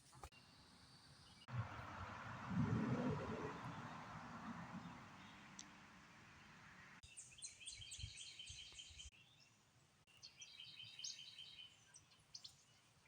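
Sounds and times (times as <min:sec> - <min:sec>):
songbird chirping: 0:03.3 - 0:13.0.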